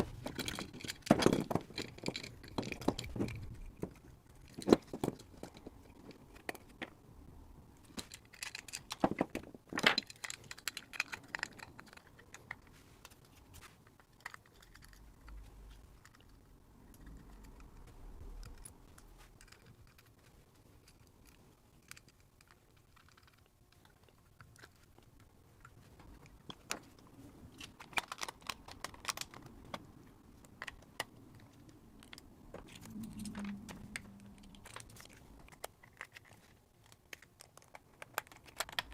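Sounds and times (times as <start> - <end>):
low hum: 31.1 - 35.6.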